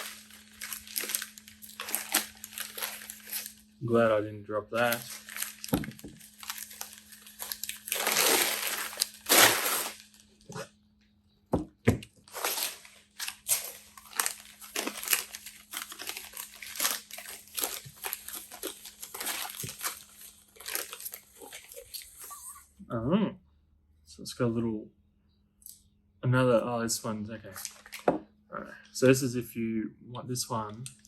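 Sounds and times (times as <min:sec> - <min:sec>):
packing material crinkling: 0:00.0 - 0:04.0, 0:04.7 - 0:10.7, 0:12.0 - 0:22.4, 0:27.5 - 0:28.2.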